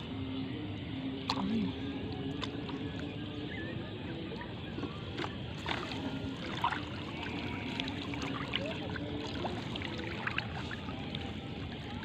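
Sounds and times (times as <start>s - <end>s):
water splashing and trickling: 4.8s - 12.0s.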